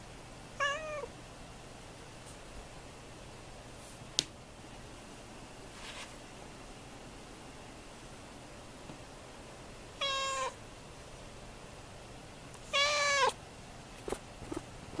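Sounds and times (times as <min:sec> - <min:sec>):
kitten meowing: 0:10.0 - 0:10.6, 0:12.7 - 0:13.4.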